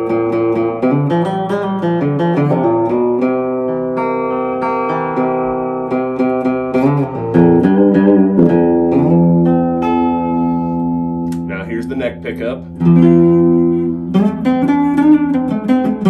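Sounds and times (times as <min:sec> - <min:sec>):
electric guitar through amplifier: 0:04.7 - 0:16.0.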